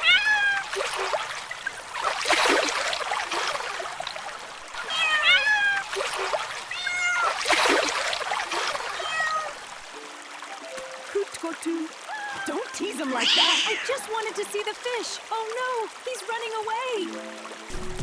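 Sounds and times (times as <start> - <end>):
cat meowing: 0.0 - 0.7, 4.8 - 5.9, 6.7 - 7.4, 8.9 - 9.6, 12.1 - 14.0
water splashing and trickling: 0.0 - 18.0.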